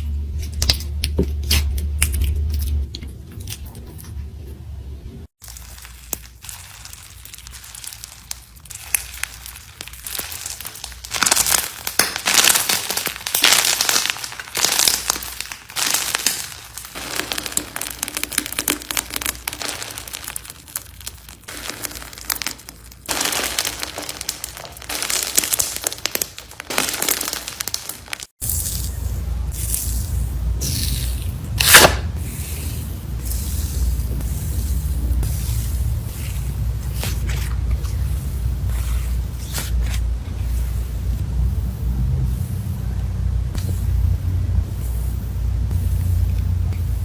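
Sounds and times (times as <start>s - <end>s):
slime squeezed crackling: 5.4s - 29.0s.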